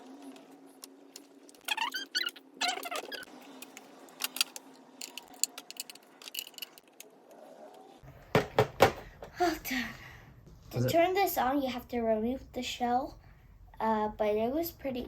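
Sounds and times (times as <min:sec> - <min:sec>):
plastic parts clicking and rattling: 0:01.0 - 0:07.2.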